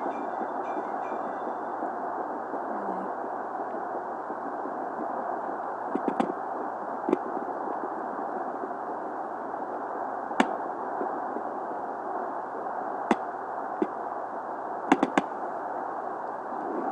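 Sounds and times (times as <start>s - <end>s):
doppler ultrasound whooshing hiss: 0.0s - 16.9s.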